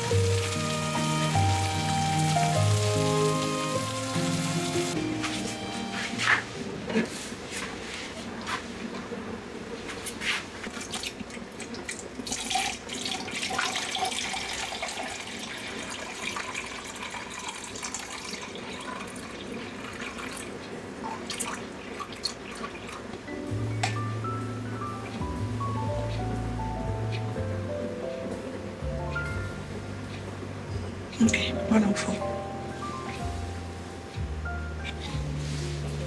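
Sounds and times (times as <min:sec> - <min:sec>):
tap water running into sink: 0:00.0 - 0:05.0, 0:10.7 - 0:23.2.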